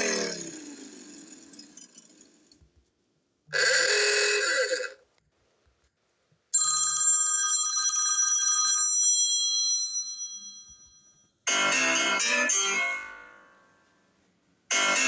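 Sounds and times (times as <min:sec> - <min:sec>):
bell-like phone chime: 0:06.6 - 0:13.8, 0:14.7 - 0:15.0
piano-like melody: 0:11.5 - 0:13.8, 0:14.7 - 0:15.0.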